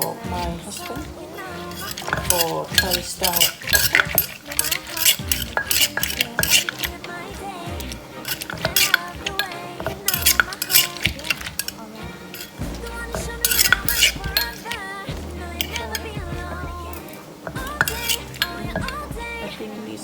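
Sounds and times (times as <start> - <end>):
background music: 0.0 - 20.0.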